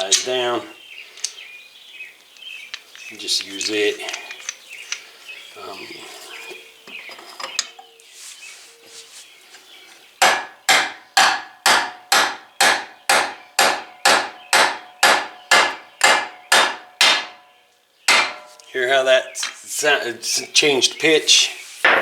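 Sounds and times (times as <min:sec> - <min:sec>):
hammer striking metal driver: 0:18.1 - 0:18.6.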